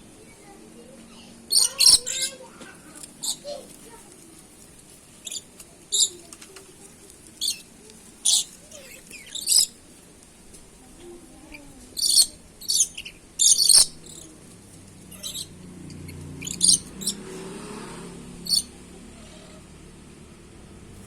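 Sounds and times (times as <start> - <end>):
bird screeching squawks: 1.5 - 2.4, 9.2 - 9.8, 12.0 - 14.0, 15.1 - 15.6, 16.4 - 17.2, 18.5 - 18.7.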